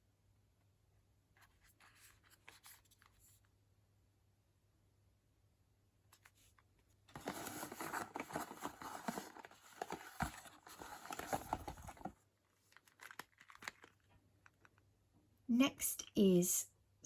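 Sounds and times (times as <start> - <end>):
packaging crinkling by hand: 7.1 - 14.8.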